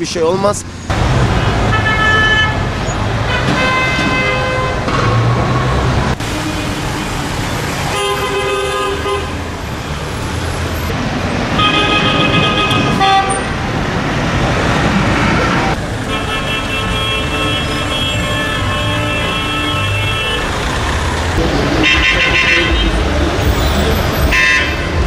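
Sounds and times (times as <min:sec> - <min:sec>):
street traffic: 0:00.0 - 0:25.0
car horns honking: 0:00.9 - 0:07.2, 0:07.8 - 0:09.5, 0:11.5 - 0:13.7, 0:15.1 - 0:20.7, 0:21.4 - 0:25.0.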